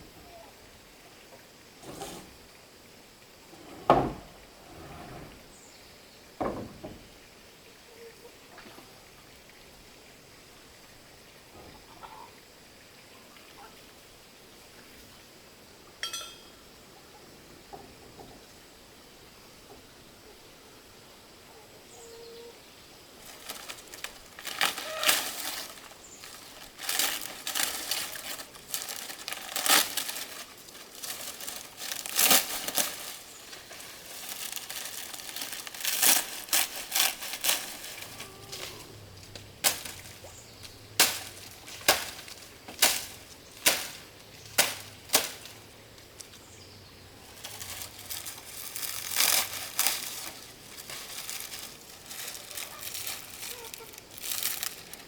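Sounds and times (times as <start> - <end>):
leaves rustling and crinkling: 0.0 - 2.6, 21.8 - 55.0.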